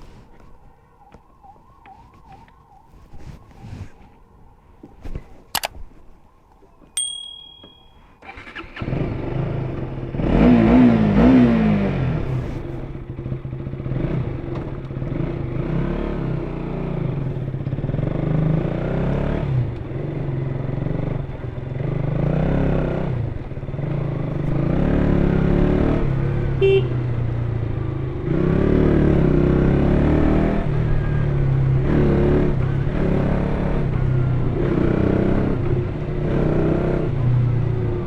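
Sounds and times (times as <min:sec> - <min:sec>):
short beep: 0:07.0 - 0:08.2
motorcycle engine revving and idling: 0:08.4 - 0:38.0.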